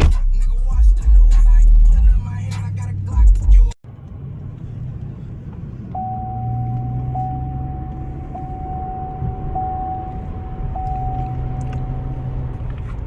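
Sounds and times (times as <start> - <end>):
low hum of car: 0.0 - 13.0
dashboard warning chime: 6.0 - 12.8.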